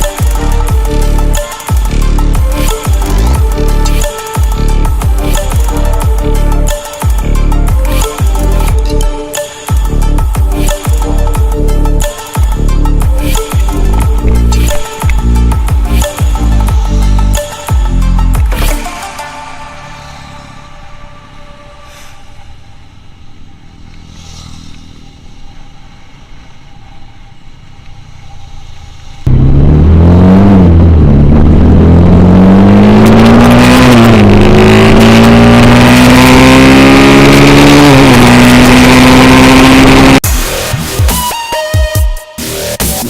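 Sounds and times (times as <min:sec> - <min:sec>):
motorcycle engine accelerating: 0:00.0 - 0:09.1, 0:19.4 - 0:40.3.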